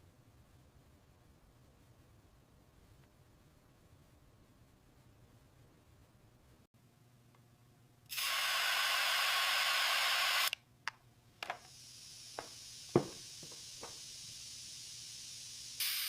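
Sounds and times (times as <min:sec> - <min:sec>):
spraying hiss: 0:08.1 - 0:10.6, 0:11.4 - 0:16.0.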